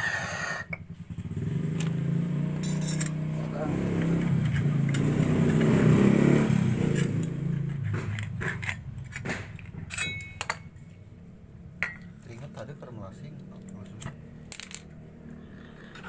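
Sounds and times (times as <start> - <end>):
metallic clicks of tools: 2.6 - 3.2, 6.9 - 10.7.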